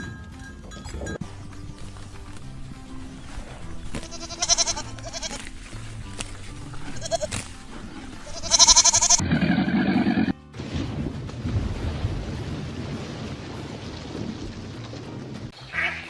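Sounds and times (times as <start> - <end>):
background music: 0.0 - 16.0
livestock bleating: 3.9 - 5.6, 6.7 - 7.5, 8.2 - 10.1, 15.7 - 16.0.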